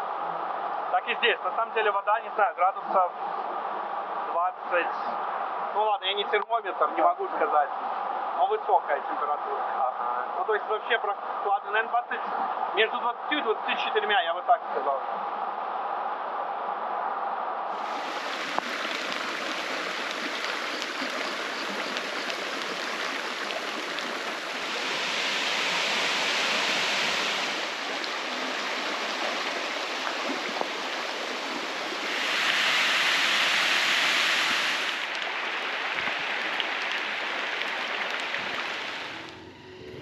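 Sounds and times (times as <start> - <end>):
waterfall and river rushing: 17.7 - 39.4.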